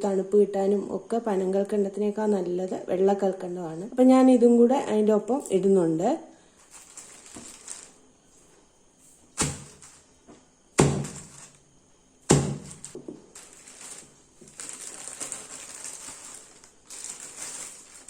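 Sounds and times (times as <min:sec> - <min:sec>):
steady rustling: 0:06.6 - 0:10.1, 0:12.3 - 0:18.0
sugar lumps knocking on plastic: 0:09.4 - 0:10.0, 0:10.8 - 0:11.6, 0:12.2 - 0:14.6.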